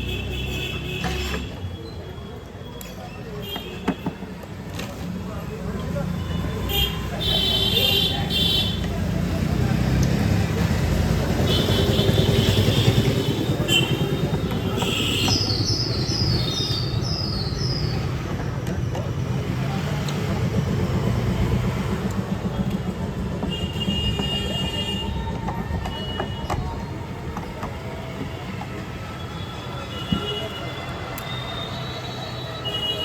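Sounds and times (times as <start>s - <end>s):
road traffic rumble: 0.0s - 33.0s.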